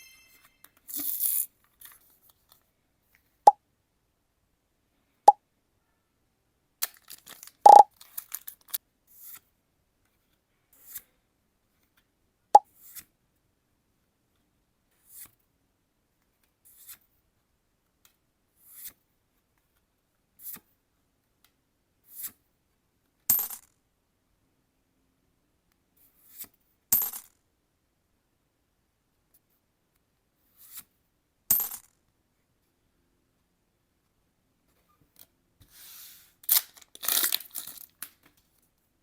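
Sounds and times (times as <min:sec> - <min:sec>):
cards brushing as slid: 0:30.5 - 0:30.9, 0:35.6 - 0:36.4.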